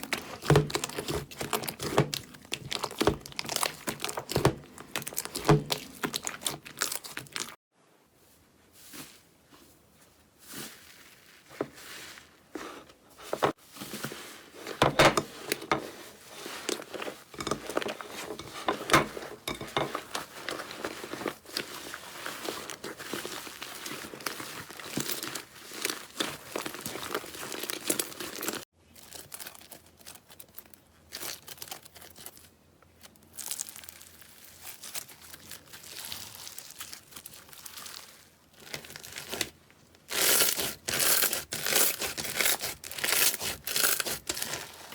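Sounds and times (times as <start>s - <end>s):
slime crinkling and popping: 0.0s - 7.6s, 19.4s - 44.9s.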